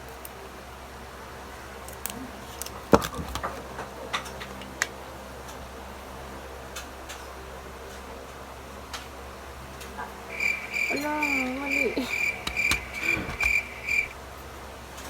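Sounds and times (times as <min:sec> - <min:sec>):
plastic clicks of remote control: 0:12.2 - 0:14.1.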